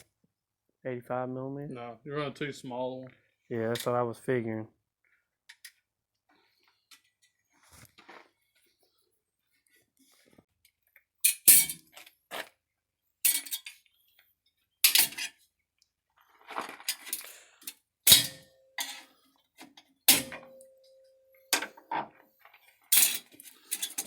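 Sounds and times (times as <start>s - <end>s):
metal tools clinking: 13.3s - 13.8s, 14.8s - 15.3s, 18.1s - 19.1s, 20.1s - 24.0s.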